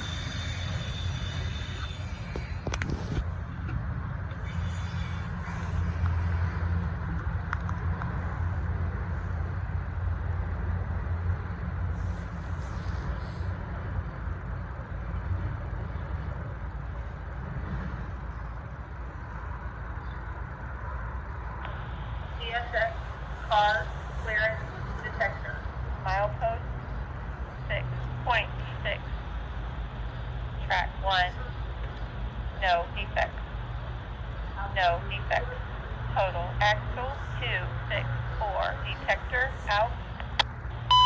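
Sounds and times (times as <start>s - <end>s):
freight train rumbling on rails: 0.0s - 41.0s.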